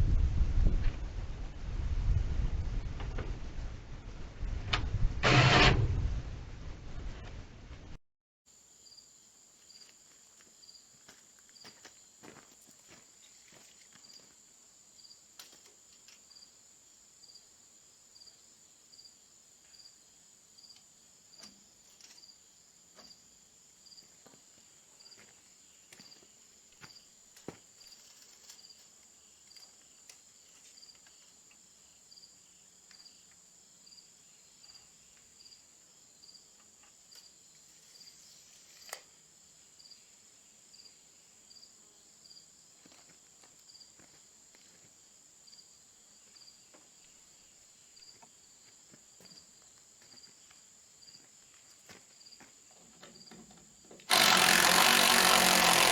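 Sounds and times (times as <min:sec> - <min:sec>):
insect chirping: 0:08.5 - 0:43.0, 0:43.7 - 0:52.6
insects buzzing: 0:54.0 - 0:55.9.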